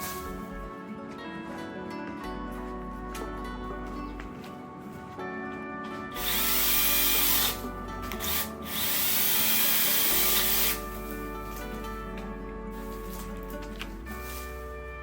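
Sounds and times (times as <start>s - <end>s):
background music: 0.0s - 15.0s
mini chainsaw cutting branches: 6.2s - 11.7s.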